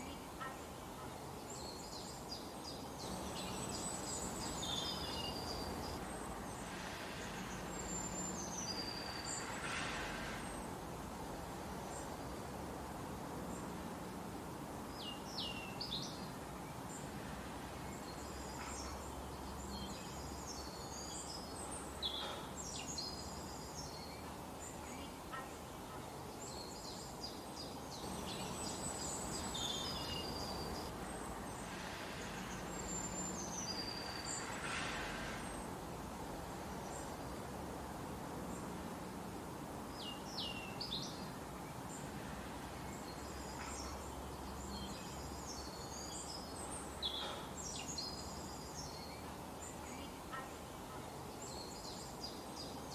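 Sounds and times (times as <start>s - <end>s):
steady background hiss: 0.0s - 52.9s
songbirds chirping and whistling: 1.5s - 10.6s, 18.0s - 35.7s.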